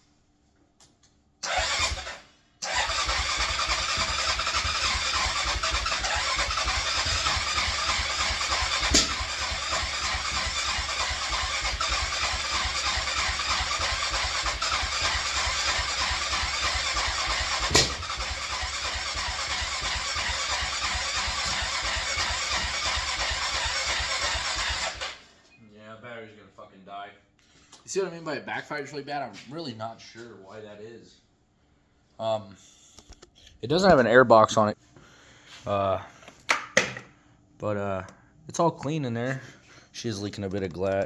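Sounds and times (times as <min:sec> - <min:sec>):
electric starter cranking engine: 0:01.4 - 0:25.4
engine backfire: 0:01.4 - 0:25.4.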